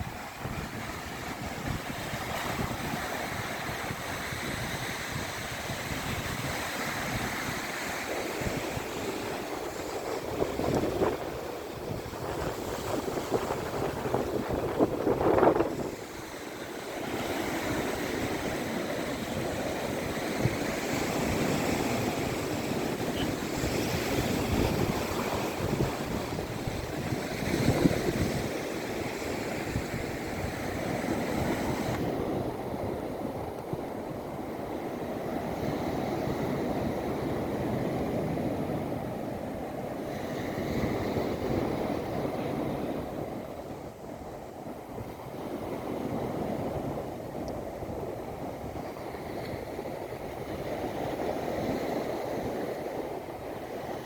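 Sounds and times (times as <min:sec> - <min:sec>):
surf washing onto beach: 0:00.0 - 0:54.0.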